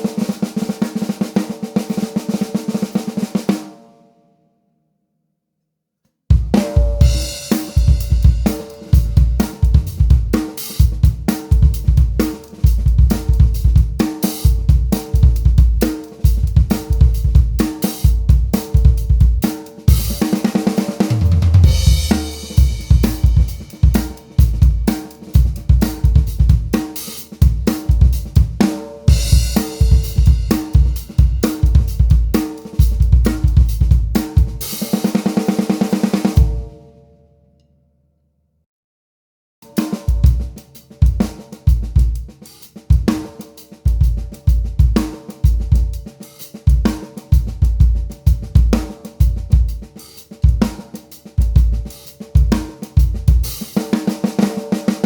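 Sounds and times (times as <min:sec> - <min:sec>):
drum kit playing a groove: 0:00.0 - 0:03.7, 0:06.3 - 0:36.8, 0:39.6 - 0:55.0
deep drum hit: 0:21.3 - 0:24.8
cymbal crashes: 0:21.6 - 0:24.2.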